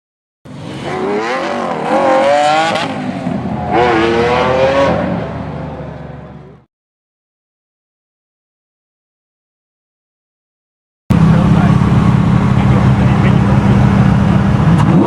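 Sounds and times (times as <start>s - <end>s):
car engine revving hard: 0.7s - 5.7s, 11.1s - 15.0s.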